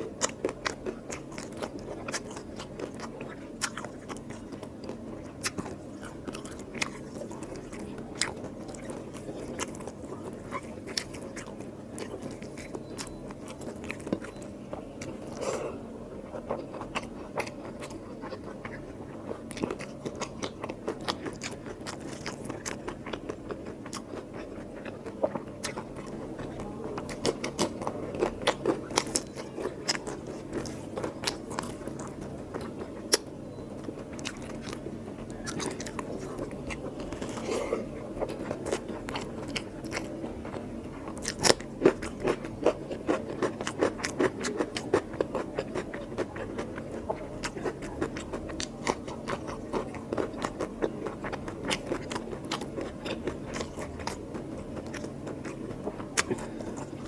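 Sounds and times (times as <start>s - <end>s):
wet chewing and mouth smacks: 16.4s - 57.0s.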